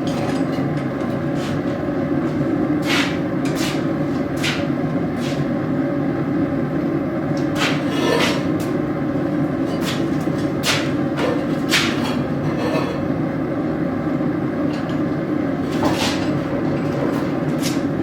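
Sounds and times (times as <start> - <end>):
forge burner rushing: 6.9 - 18.0.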